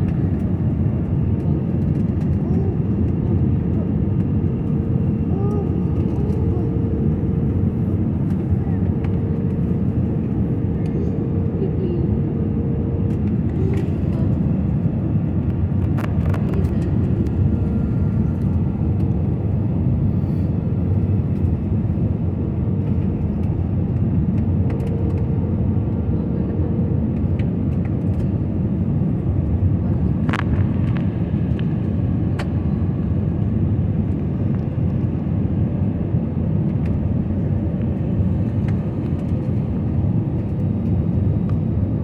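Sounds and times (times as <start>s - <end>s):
faint hum: 0.0s - 33.4s
jet engines and airflow rumble: 0.0s - 42.0s.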